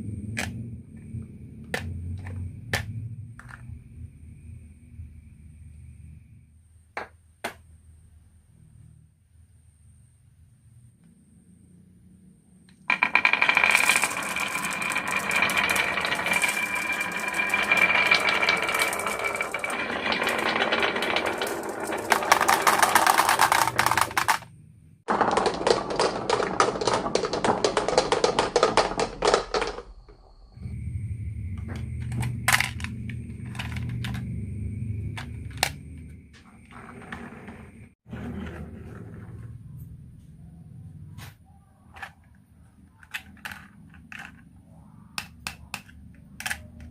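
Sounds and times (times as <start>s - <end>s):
marbles rattling down wooden track: 12.8s - 24.5s, 25.1s - 30.0s, 32.0s - 34.4s
low hum: 30.0s - 36.4s.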